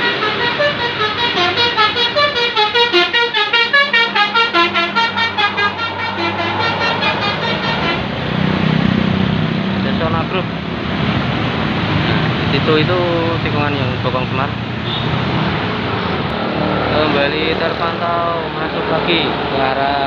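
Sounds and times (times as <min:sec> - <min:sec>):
bus air horns playing a tune: 0:00.0 - 0:08.4
bus engine running: 0:00.0 - 0:20.0.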